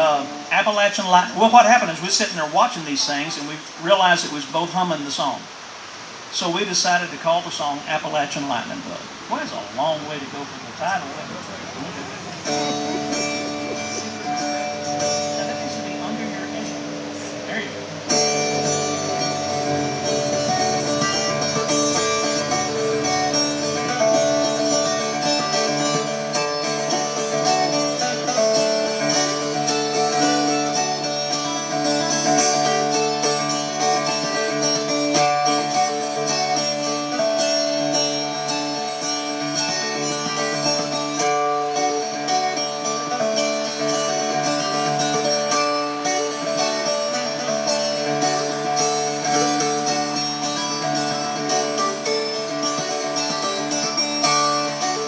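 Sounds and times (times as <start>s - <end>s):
plucked acoustic string tune: 0.0s - 5.5s, 6.3s - 55.0s
sustained drone notes: 11.8s - 55.0s.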